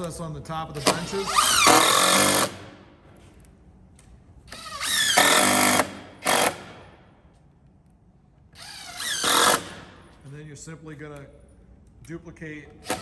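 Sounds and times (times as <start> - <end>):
power drill driving screw: 0.8 - 2.6, 4.5 - 6.7, 8.6 - 9.8.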